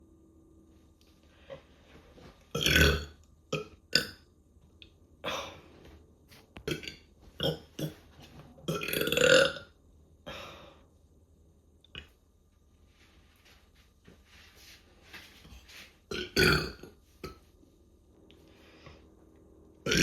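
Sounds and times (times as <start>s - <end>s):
person burping: 2.5s - 4.2s, 6.6s - 8.0s, 8.7s - 9.7s, 16.1s - 17.4s.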